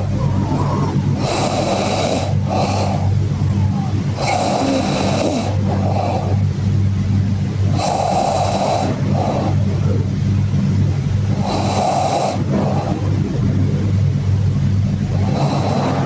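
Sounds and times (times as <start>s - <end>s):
steady low hum: 0.0s - 16.0s
snoring: 0.7s - 3.2s, 4.1s - 6.5s, 7.7s - 10.1s, 11.3s - 13.2s, 15.1s - 16.0s.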